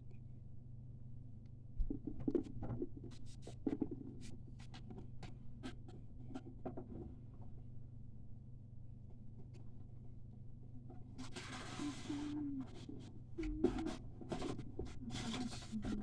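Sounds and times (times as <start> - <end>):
low steady hum: 4.4 - 16.0.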